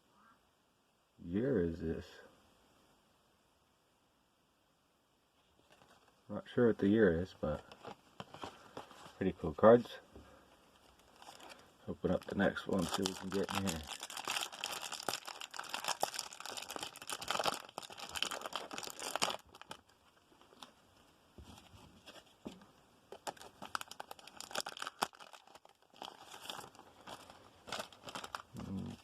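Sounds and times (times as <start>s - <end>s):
cards rustling and clicking: 7.6s - 9.2s
plastic wrapper crinkling and tearing: 10.8s - 20.7s, 23.1s - 29.0s.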